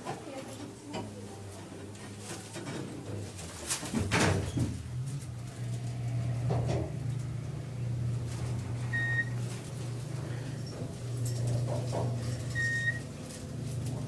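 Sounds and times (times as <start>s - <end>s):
elevator humming: 4.7s - 14.0s
short electronic beeps: 8.9s - 9.3s.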